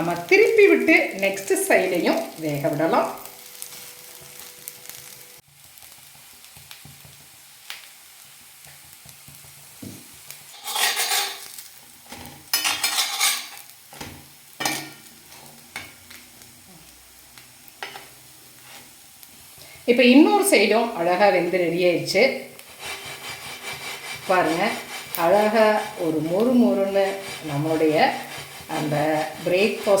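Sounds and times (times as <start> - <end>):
batter sizzling on a griddle: 0.0 - 30.0
scrapes and clatters on griddle: 8.6 - 16.0, 17.8 - 18.9, 22.6 - 30.0.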